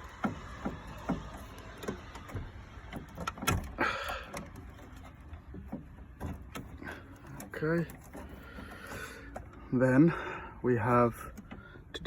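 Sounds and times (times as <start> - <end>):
connectors clicking and knocking: 0.0 - 9.8, 10.9 - 12.0
scraping rustle: 0.0 - 10.0.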